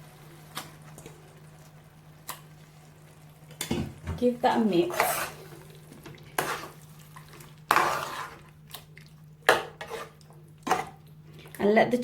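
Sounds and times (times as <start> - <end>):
spoon scraping in pan: 4.6 - 8.5, 9.5 - 11.0.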